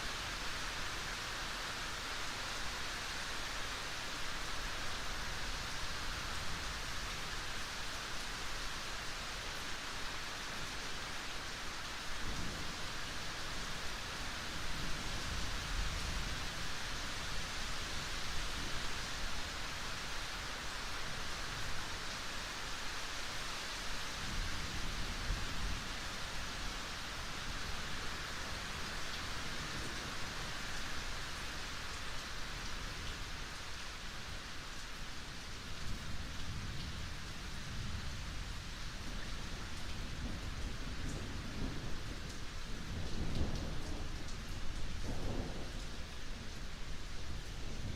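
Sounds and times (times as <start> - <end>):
rain falling: 0.0 - 47.9.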